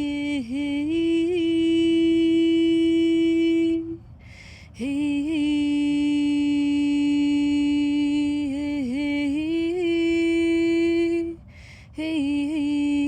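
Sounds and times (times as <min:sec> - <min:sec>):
woman singing long held notes: 0:00.0 - 0:13.0
woman breathing: 0:04.0 - 0:04.8, 0:11.4 - 0:12.0.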